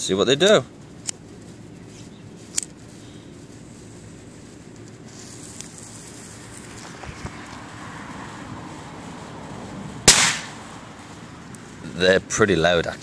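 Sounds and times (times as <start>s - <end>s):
firecracker fuse fizzing: 0.4s - 13.0s
loud sharp firecracker bang: 10.0s - 10.7s.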